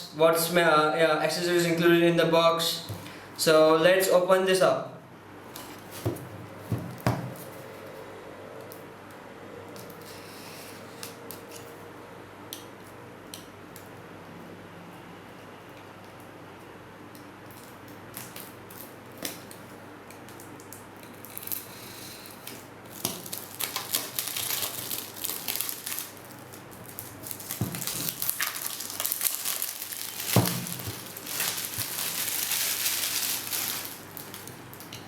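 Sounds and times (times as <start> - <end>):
plastic wrap crinkling and tearing: 17.6 - 35.0.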